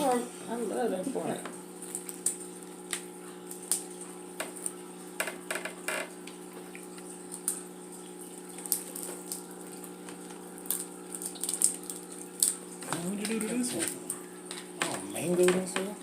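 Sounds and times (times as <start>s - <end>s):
steady background hum: 0.0s - 16.0s
eating clicks and smacks: 8.4s - 15.9s.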